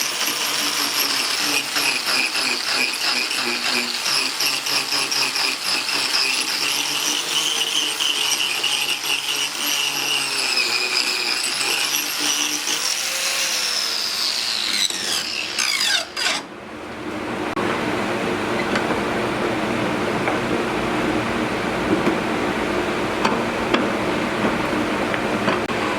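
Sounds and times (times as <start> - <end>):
angle grinder cutting wood: 0.0 - 16.5.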